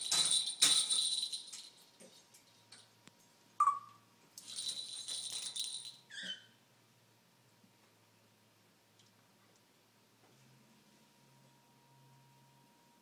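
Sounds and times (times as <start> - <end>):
jingling rattle: 0.0 - 2.0, 4.4 - 6.2
parrot chirping: 3.6 - 4.0, 6.1 - 6.6.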